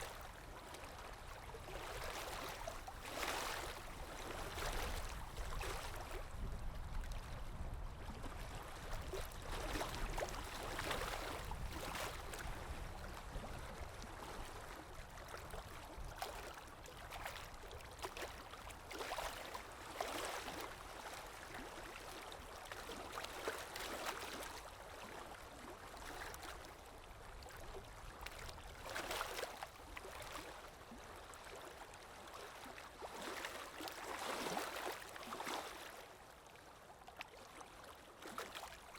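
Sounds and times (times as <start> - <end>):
sea waves breaking: 0.0 - 6.4.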